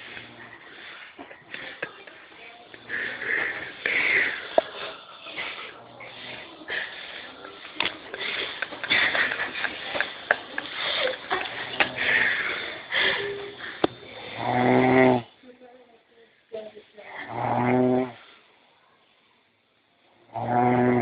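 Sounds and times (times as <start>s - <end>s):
person snoring: 2.8s - 4.7s, 11.6s - 15.3s, 17.1s - 18.2s, 20.3s - 21.0s.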